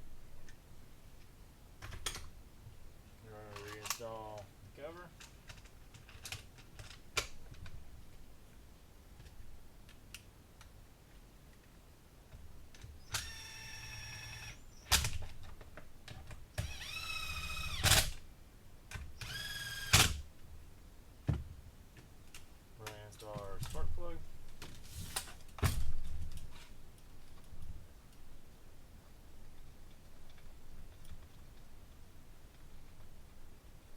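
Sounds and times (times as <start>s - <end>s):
power tool motor whine: 16.6s - 18.0s, 19.2s - 20.1s.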